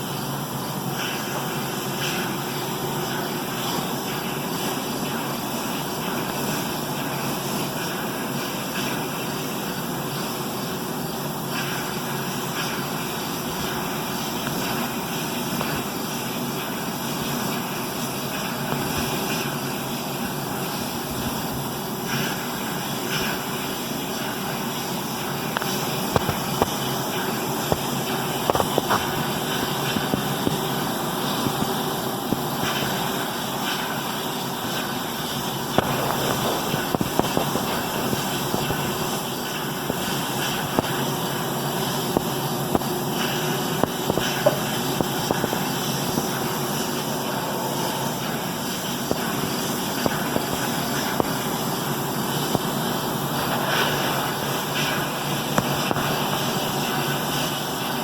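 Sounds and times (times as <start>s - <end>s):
steady droning hum: 2.4s - 58.0s
sharp clicks or pops: 35.8s - 38.9s.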